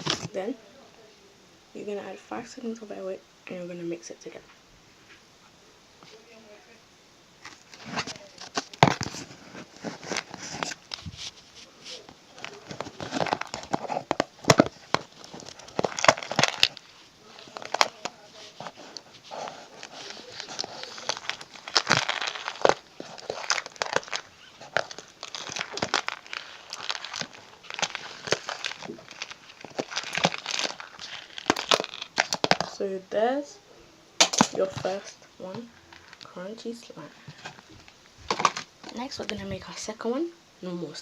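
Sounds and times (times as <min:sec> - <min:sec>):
crunchy slime crackling: 0:00.0 - 0:00.6, 0:07.4 - 0:33.0, 0:34.2 - 0:39.4.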